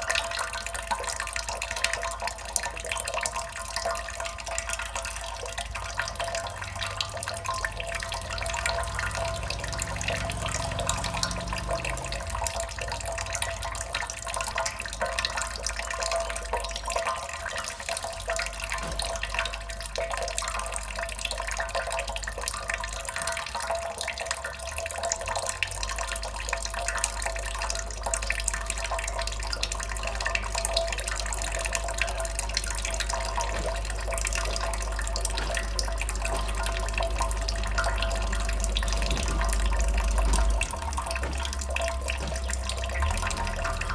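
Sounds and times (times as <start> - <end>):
water dripping: 0.0 - 43.9.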